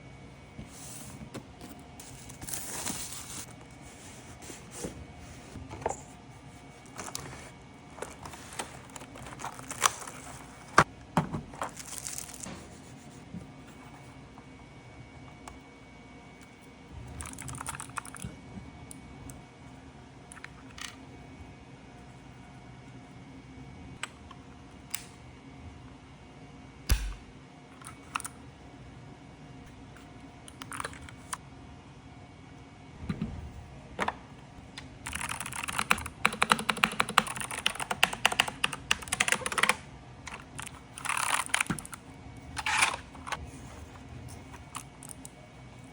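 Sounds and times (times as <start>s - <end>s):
mechanical keyboard clicks and knocks: 35.0s - 42.0s.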